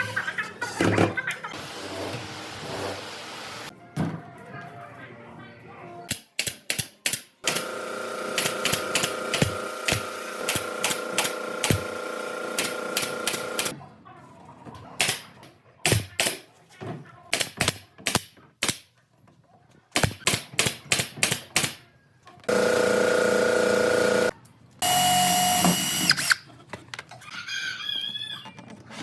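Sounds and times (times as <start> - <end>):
power drill running: 7.4 - 13.7, 22.5 - 26.4.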